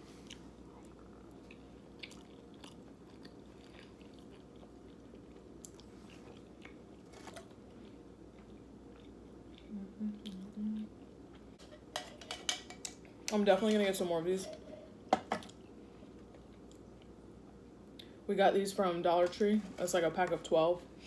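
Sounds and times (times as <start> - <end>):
close chewing and crunching: 0.1 - 11.6
low wavering vocal sound: 9.7 - 10.9.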